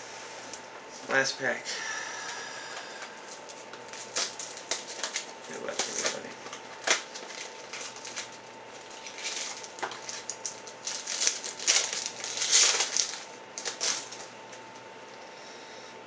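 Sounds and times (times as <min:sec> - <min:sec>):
wrapper crinkling and tearing: 0:03.3 - 0:14.3.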